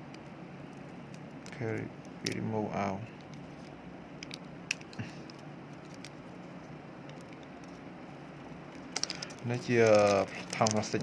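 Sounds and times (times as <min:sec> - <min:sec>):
low background noise: 0:00.0 - 0:11.0
small clicks and taps: 0:04.2 - 0:06.2.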